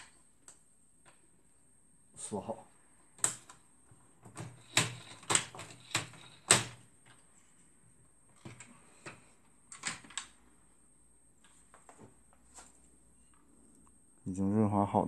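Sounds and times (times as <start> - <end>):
plastic parts clicking: 8.4 - 10.4.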